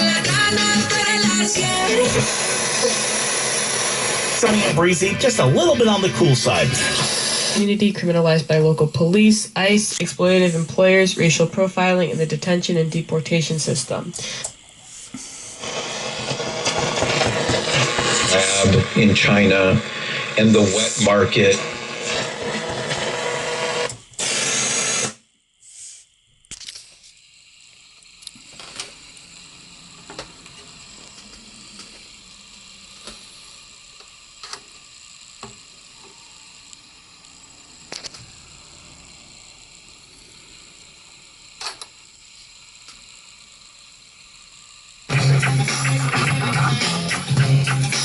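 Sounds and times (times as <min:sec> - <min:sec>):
radio audio: 0:00.0 - 0:25.0, 0:45.1 - 0:48.0
vinyl surface hiss and clicks: 0:00.0 - 0:48.0.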